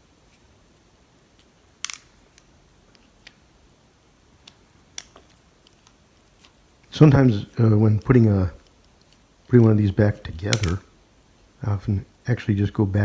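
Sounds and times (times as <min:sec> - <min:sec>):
metal lock parts clicking: 0:10.4 - 0:10.8.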